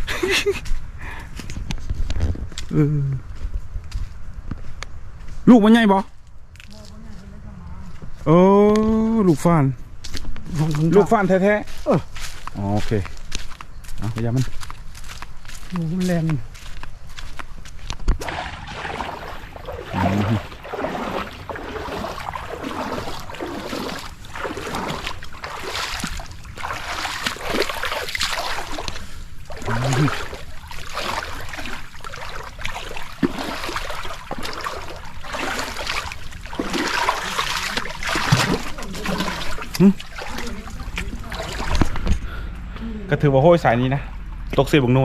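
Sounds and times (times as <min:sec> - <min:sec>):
water trickling and splashing: 0:18.1 - 0:42.3.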